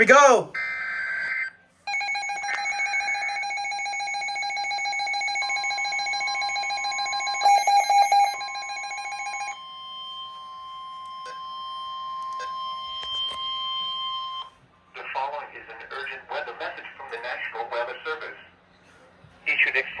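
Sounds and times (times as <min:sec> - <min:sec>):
steady alarm tone: 0:00.0 - 0:14.6
single-pitch warning alarm tone: 0:00.6 - 0:14.6
warbling data burst: 0:01.9 - 0:09.6.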